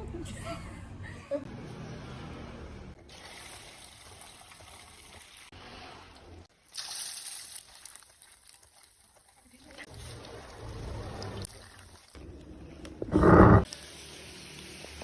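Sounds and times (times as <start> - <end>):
hot oil sizzling: 6.6 - 12.2, 13.6 - 15.0.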